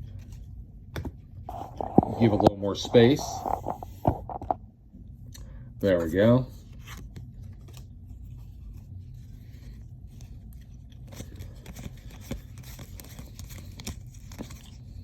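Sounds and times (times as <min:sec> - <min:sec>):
low steady hum: 0:00.0 - 0:15.0
cards sliding and snapping: 0:01.5 - 0:04.5, 0:10.1 - 0:14.8.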